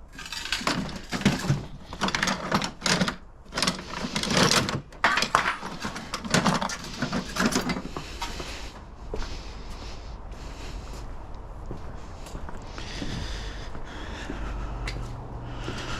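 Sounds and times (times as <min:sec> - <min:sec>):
rummaging through tools: 0:00.0 - 0:09.4.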